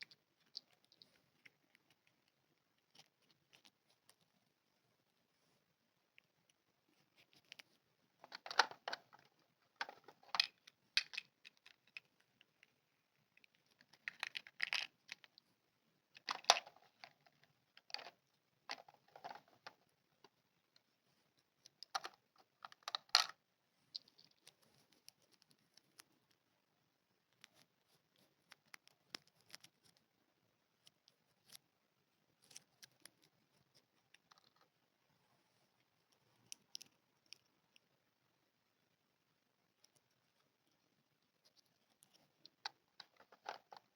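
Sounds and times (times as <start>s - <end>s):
plastic toy parts clicking: 8.2s - 12.7s.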